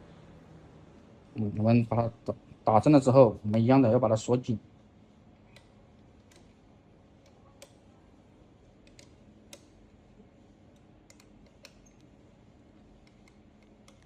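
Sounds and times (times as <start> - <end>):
wrench metal clicks and taps: 10.7 - 12.1.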